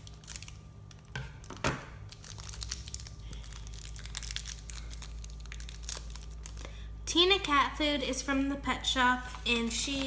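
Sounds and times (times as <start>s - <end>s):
plastic crackle: 0.0s - 6.8s
plastic packaging crinkling: 0.0s - 6.9s.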